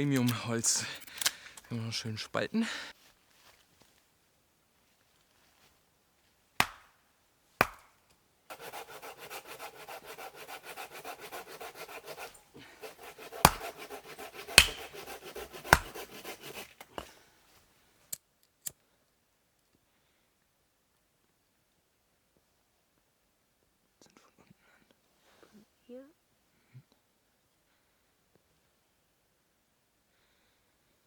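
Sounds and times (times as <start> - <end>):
scraping strokes on wood: 8.5 - 17.2
knocks on wood: 13.4 - 13.8, 14.5 - 14.9, 15.7 - 16.0.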